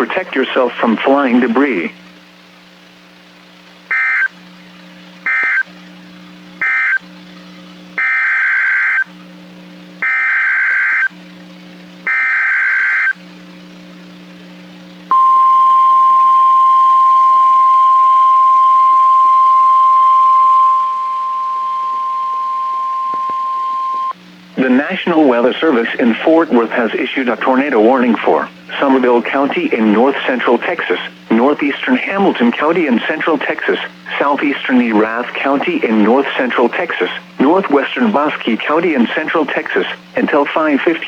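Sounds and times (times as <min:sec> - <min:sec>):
short buzzy data bursts: 0:03.9 - 0:04.4, 0:06.6 - 0:07.0, 0:10.0 - 0:11.1, 0:12.1 - 0:13.2
steady warning alarm tone: 0:03.9 - 0:04.4, 0:05.2 - 0:05.7, 0:06.6 - 0:07.0, 0:08.0 - 0:09.1, 0:10.0 - 0:11.2, 0:12.0 - 0:13.2, 0:15.1 - 0:24.2.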